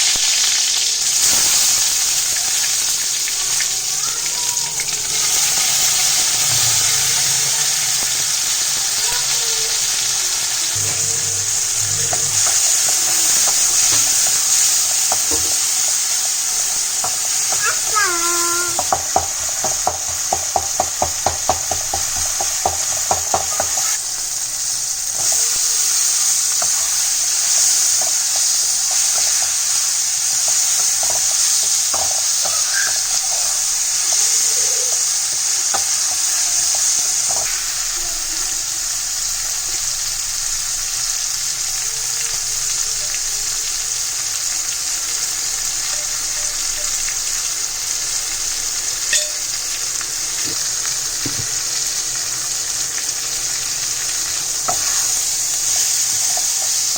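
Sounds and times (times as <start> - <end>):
food sizzling in a pan: 0.0 - 56.9
spoon knocking against pan: 10.7 - 14.3, 17.0 - 24.0, 49.1 - 49.5.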